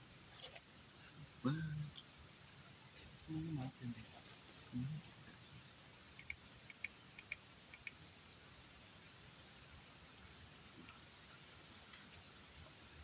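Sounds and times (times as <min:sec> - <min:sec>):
crickets trilling: 0:01.4 - 0:08.6
sharp clicks: 0:06.2 - 0:08.0.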